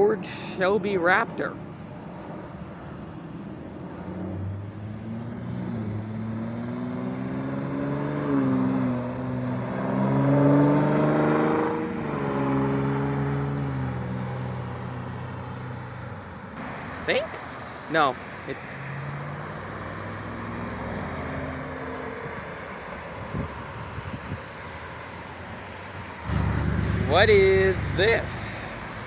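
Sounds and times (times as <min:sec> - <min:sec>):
traffic noise: 0:00.0 - 0:29.0
truck engine driving past: 0:26.0 - 0:29.0.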